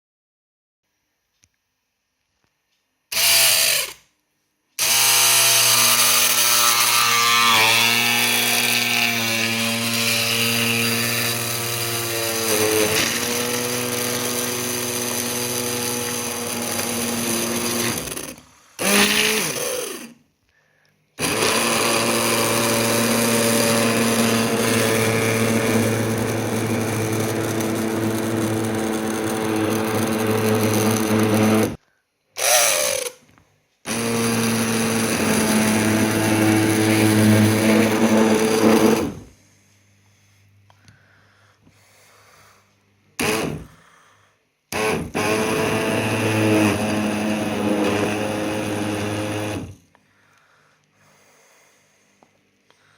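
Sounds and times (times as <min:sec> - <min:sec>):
small electric motor running: 0:04.8 - 0:20.2, 0:21.2 - 0:31.8, 0:33.9 - 0:39.3, 0:44.8 - 0:49.8.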